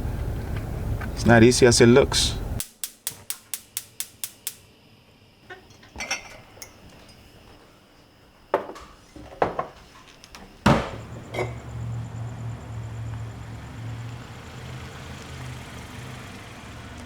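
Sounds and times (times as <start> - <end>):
sharp clicks: 2.6 - 4.6
knocks and clinks: 5.5 - 7.2, 10.7 - 11.7
thump: 10.6 - 11.1.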